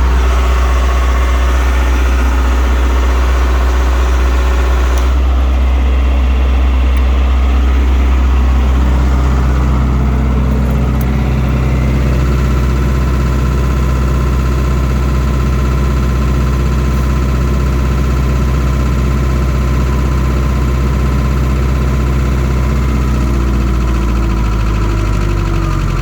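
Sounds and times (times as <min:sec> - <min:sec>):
diesel generator running: 0:00.0 - 0:26.0.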